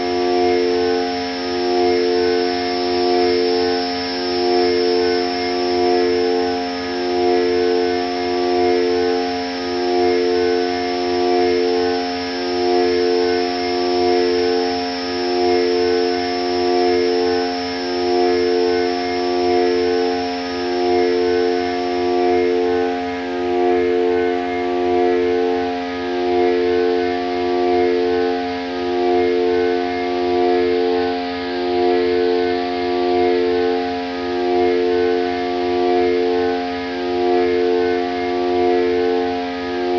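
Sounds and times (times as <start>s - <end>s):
high whistling tone: 0.0s - 25.7s
synthesizer drone: 0.0s - 39.9s.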